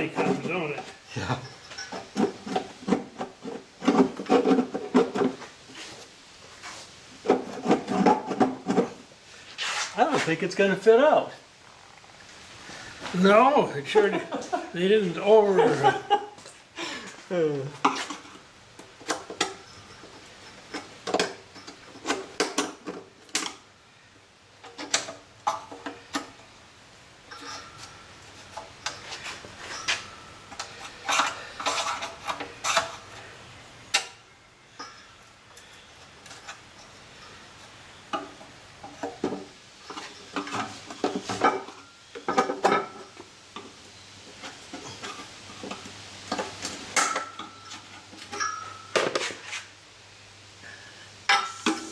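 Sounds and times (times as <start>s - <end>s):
metal tools clinking and clanking: 0.1s - 3.0s, 19.1s - 23.5s, 27.3s - 33.2s, 34.7s - 37.8s, 44.7s - 49.3s.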